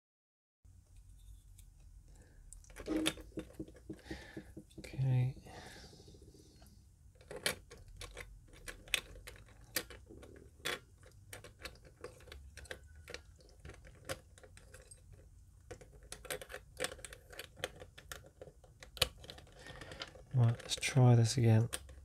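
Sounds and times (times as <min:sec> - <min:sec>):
plastic puzzle cube pieces clicking: 0:07.2 - 0:20.8.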